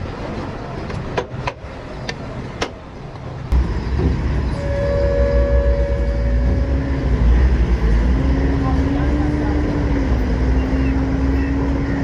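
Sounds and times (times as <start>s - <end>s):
vehicle engine rumble: 0.0s - 12.0s
steady whine: 3.5s - 9.1s.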